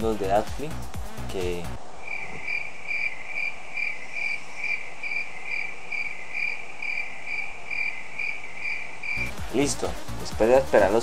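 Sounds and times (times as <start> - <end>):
crickets chirping: 1.8 - 9.6.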